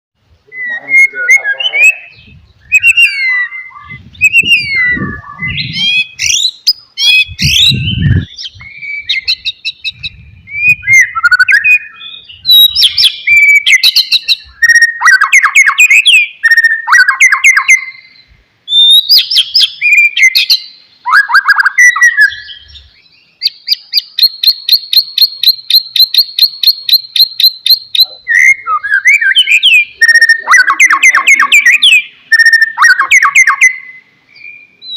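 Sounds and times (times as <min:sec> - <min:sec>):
bird singing whistles and trills: 0:00.5 - 0:34.9.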